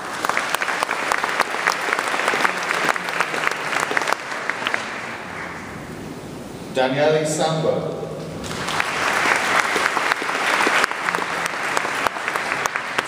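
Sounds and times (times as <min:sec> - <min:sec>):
audience applause: 0:00.0 - 0:05.7, 0:08.4 - 0:13.0.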